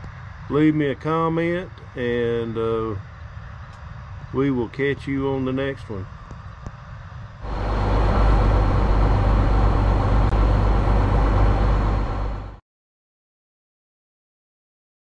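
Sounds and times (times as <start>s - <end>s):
large engine rumbling: 7.4s - 12.6s.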